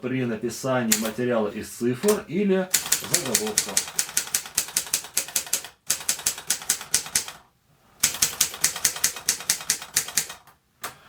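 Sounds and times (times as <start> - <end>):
manual typewriter typing: 0.9 - 1.2, 2.0 - 7.4, 8.0 - 10.5.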